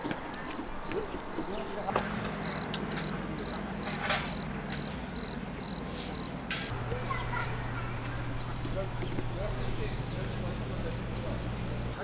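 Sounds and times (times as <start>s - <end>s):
cricket chirping: 0.2s - 12.0s
steady low hum: 6.7s - 12.0s.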